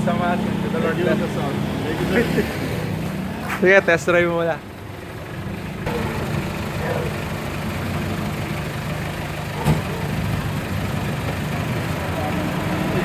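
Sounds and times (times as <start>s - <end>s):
diesel engine running: 0.0s - 13.0s
sharp thump: 9.6s - 10.0s.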